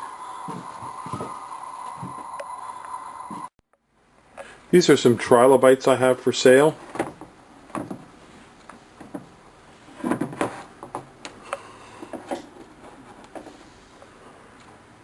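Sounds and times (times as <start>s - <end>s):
objects being handled: 6.8s - 14.8s.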